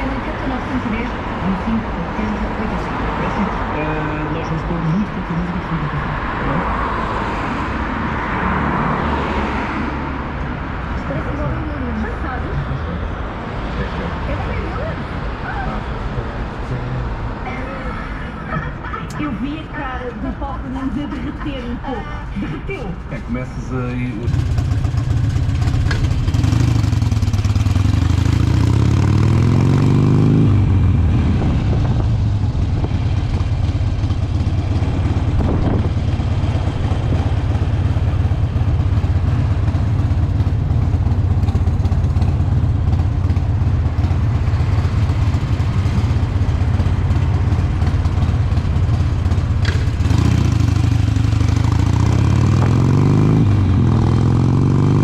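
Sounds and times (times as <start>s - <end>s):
motorcycle engine accelerating: 23.3s - 55.0s.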